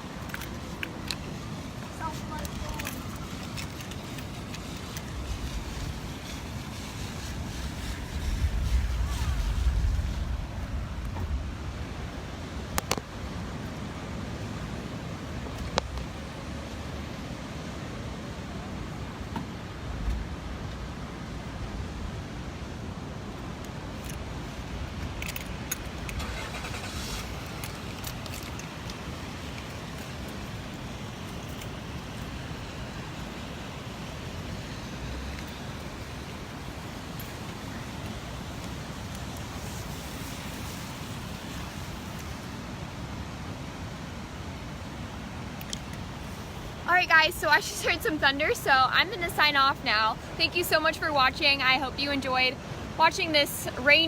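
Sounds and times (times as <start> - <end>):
wind buffeting microphone: 0.0 - 14.4
rain: 0.0 - 54.0
surf on beach: 0.0 - 54.0.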